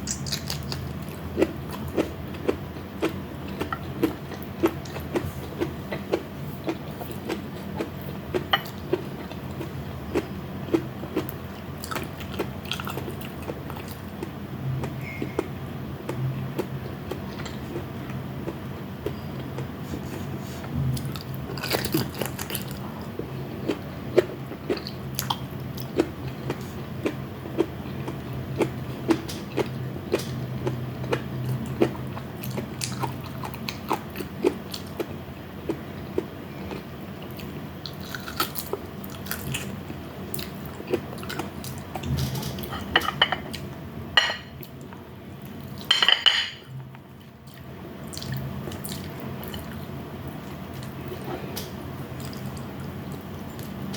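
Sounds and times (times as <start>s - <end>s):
chewing and crunching: 0.0s - 14.3s, 21.0s - 35.1s, 35.7s - 43.6s
steady low hum: 0.0s - 53.9s
utensils clinking on a plate: 42.2s - 43.5s, 45.9s - 46.6s.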